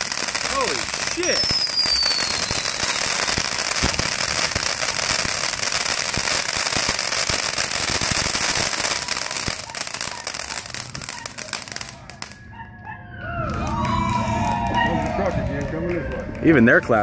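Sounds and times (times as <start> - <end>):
firework bangs: 0.0 - 12.4
firework crackling pops: 0.0 - 12.4.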